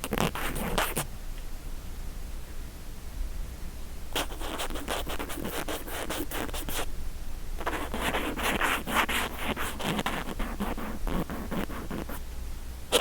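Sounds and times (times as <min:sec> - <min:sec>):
cotton swab scratching microphone: 0:00.0 - 0:01.0, 0:04.2 - 0:06.9, 0:07.6 - 0:12.2.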